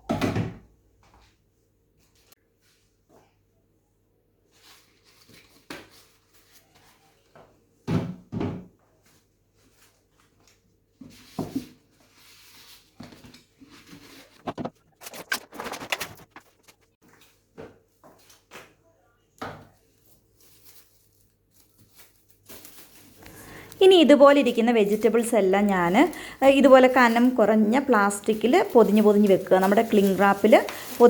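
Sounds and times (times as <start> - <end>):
rustling: 12.0 - 17.0, 20.0 - 31.0
household items clattering: 13.8 - 16.9, 22.5 - 31.0.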